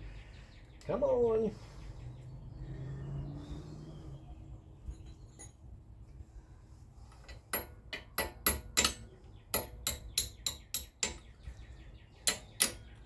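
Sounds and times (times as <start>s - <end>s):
sharp metal-on-metal taps: 7.3s - 11.3s, 12.2s - 13.0s.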